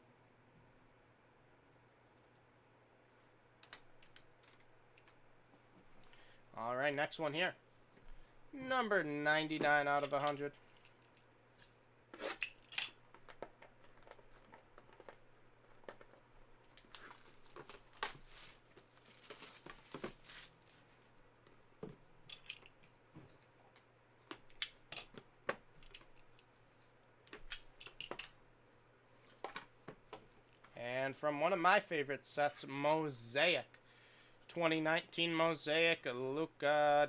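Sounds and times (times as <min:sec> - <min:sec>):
packaging rustling: 0:12.2 - 0:21.2.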